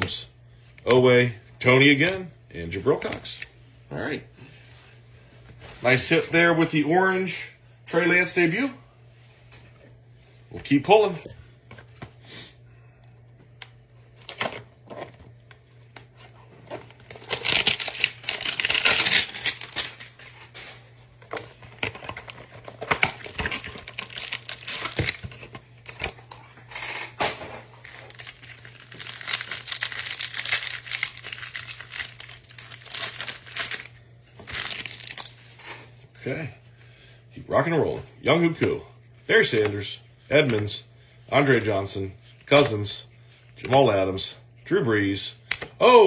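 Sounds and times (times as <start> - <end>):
plastic wrappers crinkling and tearing: 16.0 - 26.7, 27.7 - 35.9.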